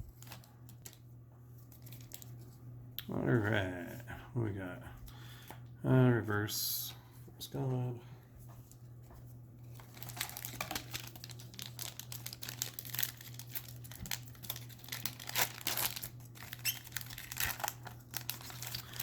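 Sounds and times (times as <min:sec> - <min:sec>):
foil wrapper crinkling and tearing: 0:01.7 - 0:02.4, 0:09.7 - 0:19.0.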